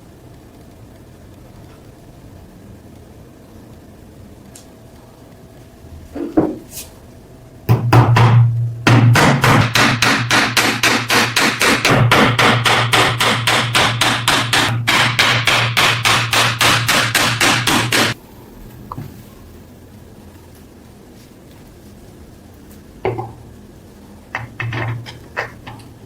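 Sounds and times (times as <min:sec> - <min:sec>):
rapid hammering: 0:07.7 - 0:18.2.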